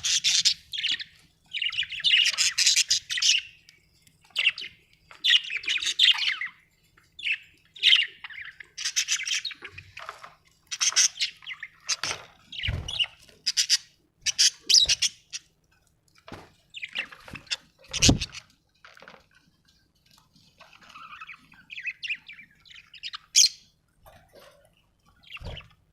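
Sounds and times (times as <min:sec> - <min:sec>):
budgerigar warbling and chirping: 0:00.0 - 0:03.5, 0:07.2 - 0:09.8, 0:10.7 - 0:15.4.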